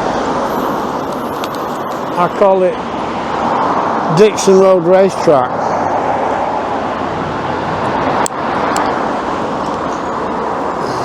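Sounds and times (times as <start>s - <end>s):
cars passing on busy road: 0.0s - 11.0s.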